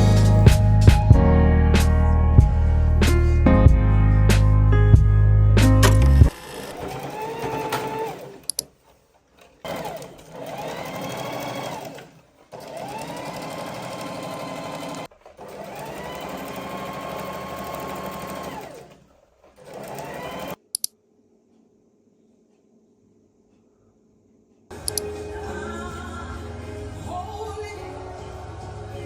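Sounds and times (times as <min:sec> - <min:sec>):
electric sewing machine running: 0:06.3 - 0:08.5, 0:09.6 - 0:19.0, 0:19.6 - 0:20.6
sharp clicks: 0:07.6 - 0:08.7, 0:20.6 - 0:21.0.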